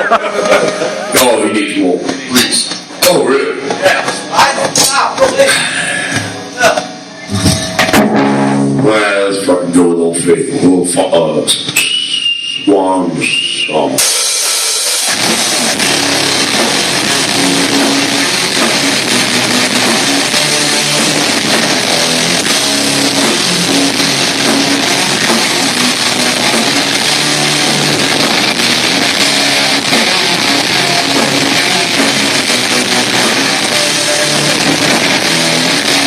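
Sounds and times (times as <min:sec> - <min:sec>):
electric guitars: 0:00.0 - 0:09.0, 0:14.0 - 0:36.0
heavy metal band playing live: 0:06.2 - 0:09.0, 0:14.0 - 0:36.0.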